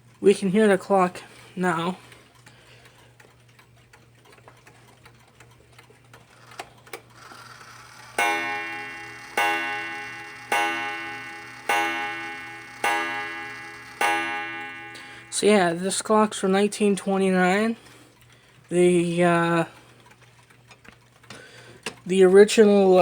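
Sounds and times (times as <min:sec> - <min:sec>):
mantel clock ticking: 0:01.6 - 0:16.1
clock striking ringing blows: 0:07.6 - 0:16.0.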